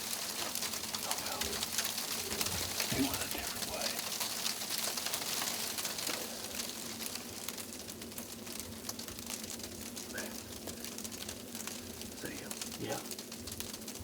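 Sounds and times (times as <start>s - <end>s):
snow ticking on microphone: 0.0s - 7.0s.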